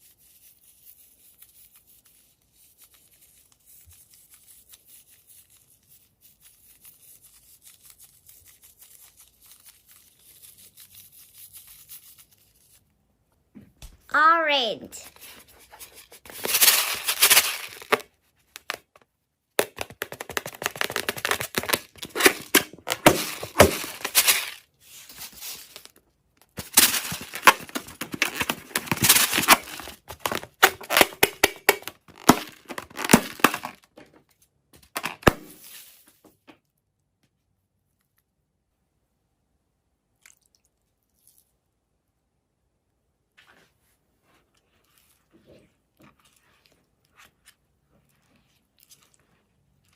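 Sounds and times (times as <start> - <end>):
crackling handling noise: 15.1 - 36.6.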